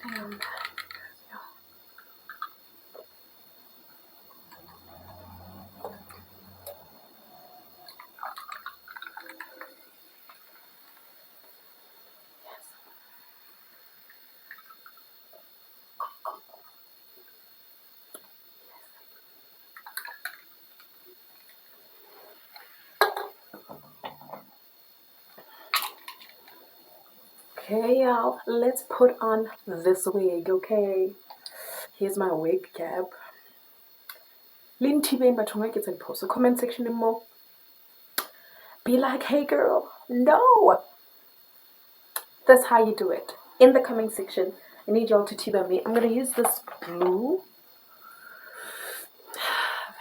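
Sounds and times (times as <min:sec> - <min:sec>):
objects knocking and rattling: 0:00.0 - 0:01.1, 0:07.8 - 0:11.1, 0:22.6 - 0:24.5
small hard objects clicking: 0:00.0 - 0:01.1, 0:01.9 - 0:02.6, 0:07.9 - 0:11.0
faint low hum: 0:00.0 - 0:31.3.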